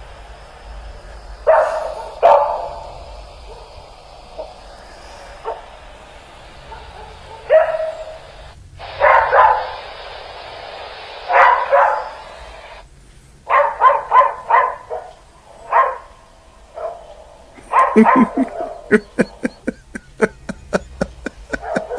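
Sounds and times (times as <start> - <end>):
dogs barking: 1.4 - 3.8, 6.6 - 8.4, 9.0 - 9.8, 11.3 - 12.2, 13.5 - 21.9.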